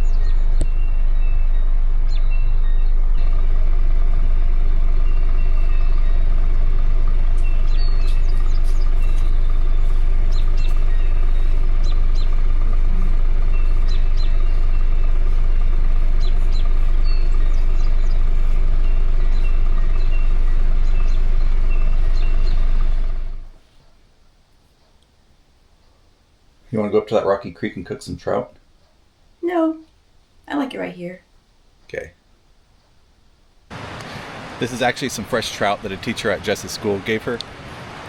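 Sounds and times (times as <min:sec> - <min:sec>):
car engine rumbling: 0:00.0 - 0:23.6, 0:33.7 - 0:38.0
small birds chirping: 0:00.0 - 0:23.6.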